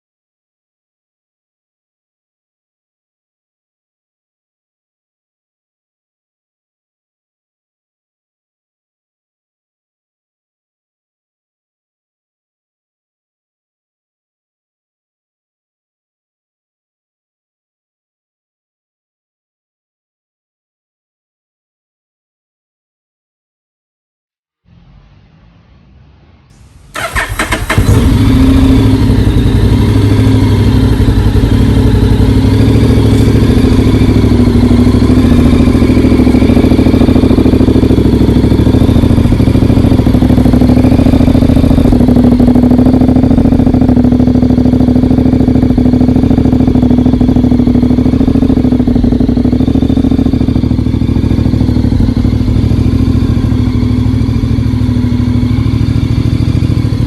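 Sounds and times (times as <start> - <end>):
motorcycle engine idling: 26.5 - 57.0
motorcycle engine cranking: 26.9 - 29.6.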